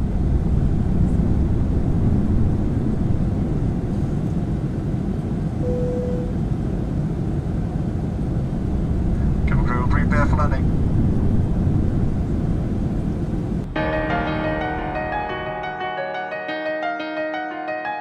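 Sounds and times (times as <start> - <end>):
dense low rumble: 0.0 - 6.0, 8.1 - 15.8
short clear tone: 5.6 - 6.3.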